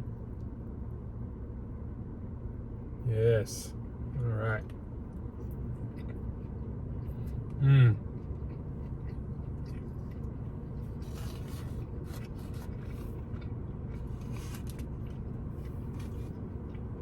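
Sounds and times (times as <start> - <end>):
steady low hum: 0.0 - 17.0
person chewing: 5.1 - 17.0.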